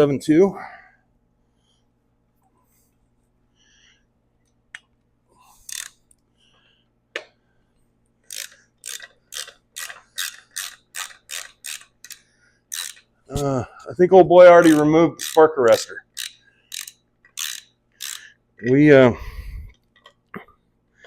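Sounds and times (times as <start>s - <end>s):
tool clicks and clatters: 5.6s - 6.0s, 8.3s - 13.1s, 14.6s - 18.8s
hand ratchet clicking: 5.6s - 6.1s, 8.2s - 13.5s, 14.6s - 18.8s.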